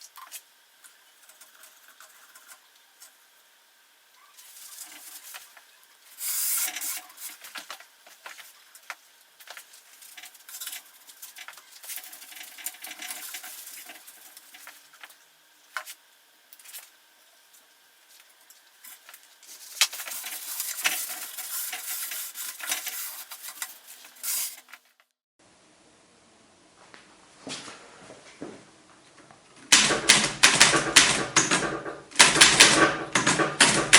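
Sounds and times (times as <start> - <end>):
scratchy rubbing and scrubbing: 18.9 - 24.8.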